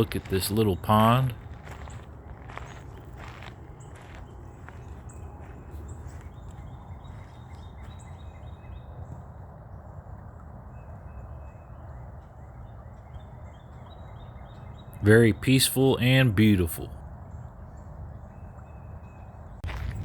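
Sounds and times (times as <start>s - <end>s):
steady low rumble: 0.0s - 15.3s, 19.4s - 20.0s
birds chirping: 0.0s - 20.0s.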